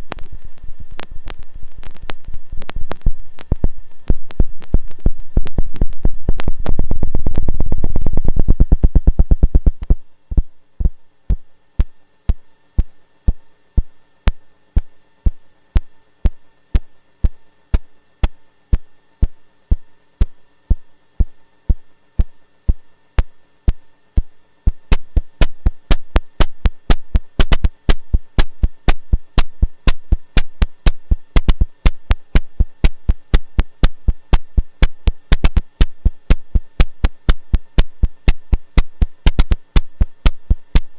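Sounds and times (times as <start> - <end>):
electronic noise percussion hits: 23.2 - 40.9.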